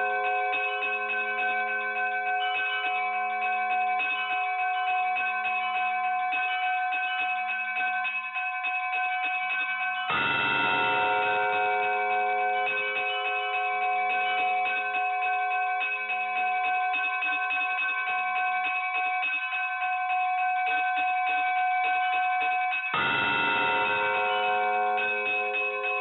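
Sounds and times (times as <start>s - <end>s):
bells ringing: 0.0s - 26.0s
deep heavy bell ringing: 10.2s - 15.8s, 23.0s - 26.0s.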